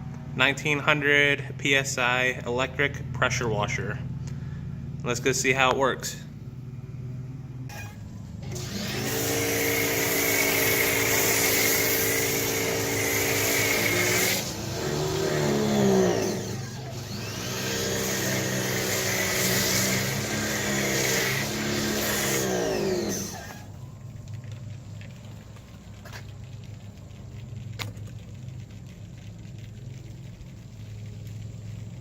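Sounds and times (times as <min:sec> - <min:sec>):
pressure washer motor hum: 0:06.4 - 0:26.0
spray hissing: 0:08.8 - 0:23.7.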